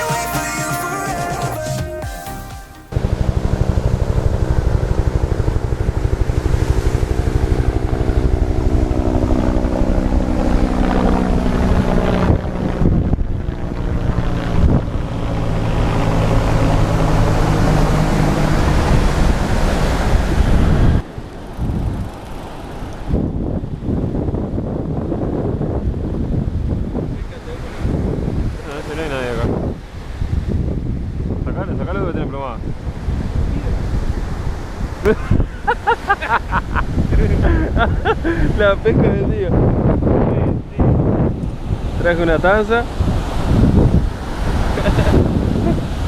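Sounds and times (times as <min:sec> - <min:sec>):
engine running: 0:02.9 - 0:23.2
wind buffeting microphone: 0:03.0 - 0:46.0.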